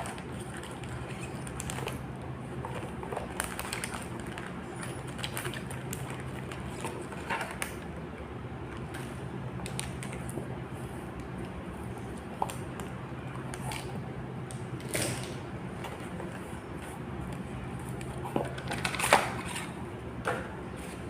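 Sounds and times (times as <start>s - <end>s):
packaging clicks and rustles: 0.0s - 8.0s, 17.3s - 19.8s
steady low hum: 0.0s - 21.0s.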